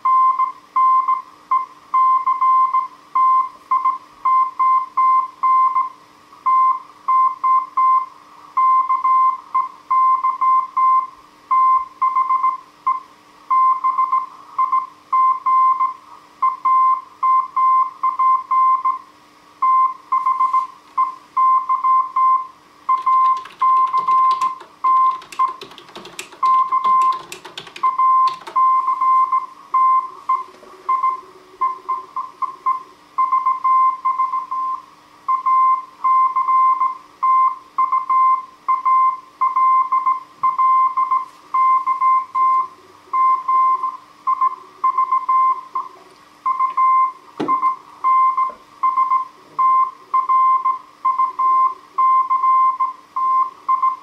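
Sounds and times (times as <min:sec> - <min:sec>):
morse code beeps: 0:19.6 - 0:45.9, 0:46.5 - 0:54.0
sharp click: 0:23.0 - 0:28.6.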